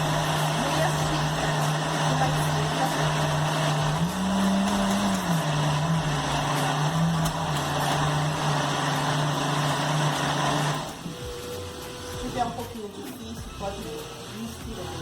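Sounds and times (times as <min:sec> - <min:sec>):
blender motor running: 0:00.0 - 0:15.0.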